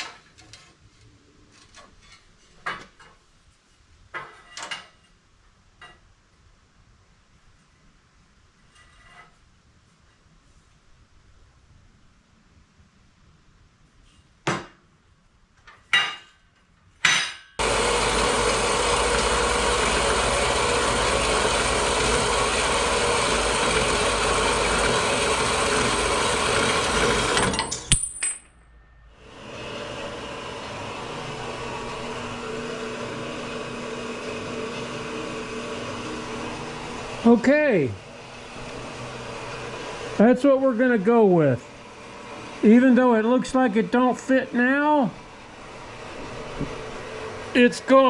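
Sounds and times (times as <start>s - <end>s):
power tool cutting steel tubing: 17.6s - 27.9s, 29.2s - 48.0s.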